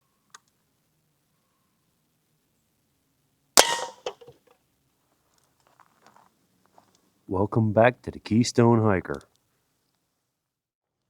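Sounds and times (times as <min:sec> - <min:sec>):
sharp metallic clang: 0:03.6 - 0:04.3.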